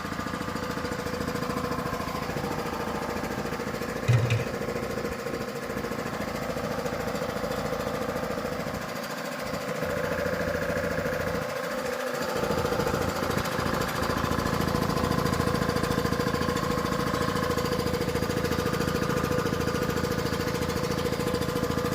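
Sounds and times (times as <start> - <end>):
compressor hum: 4.0 - 5.1
air compressor pistons pounding: 4.1 - 4.7.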